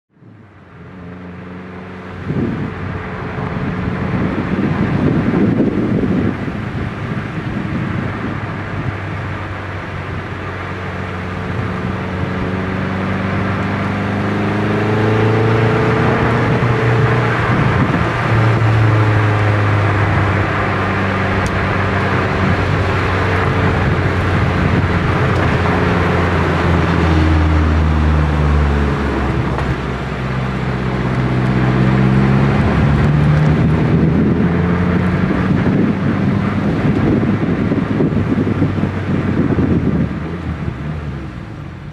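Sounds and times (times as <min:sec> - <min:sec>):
car engine and exhaust: 0:00.1 - 0:41.9
wind rushing over microphone: 0:00.1 - 0:41.9.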